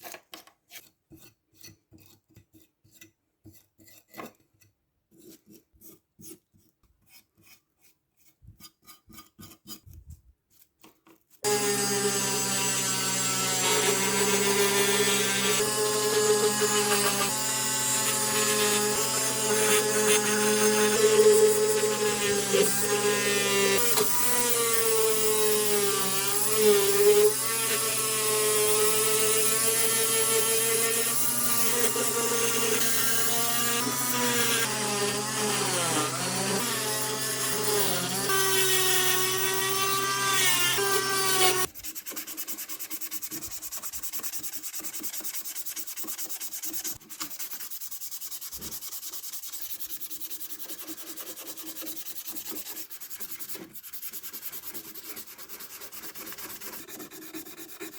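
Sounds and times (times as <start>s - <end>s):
power tool whining: 11.4s - 41.7s
sanding and rubbing: 13.4s - 57.9s.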